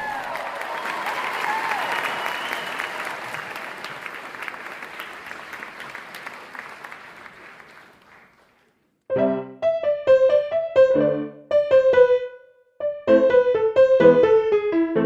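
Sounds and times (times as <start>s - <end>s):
audience applause: 0.0s - 8.8s
piano tune: 9.1s - 15.0s.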